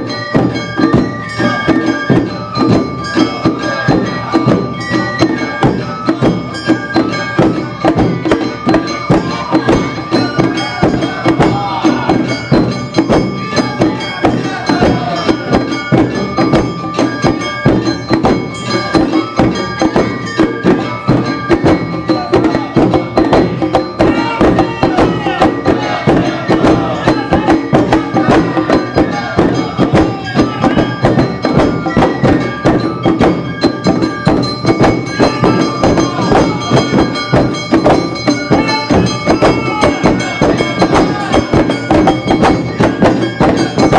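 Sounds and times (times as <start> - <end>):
drums: 0.0 - 43.9.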